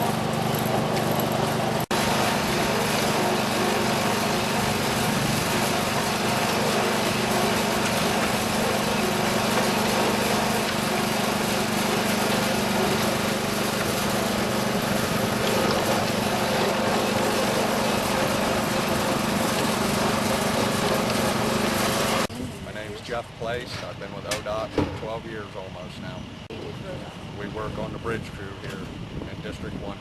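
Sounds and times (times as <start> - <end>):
small engine running: 0.0 - 22.9.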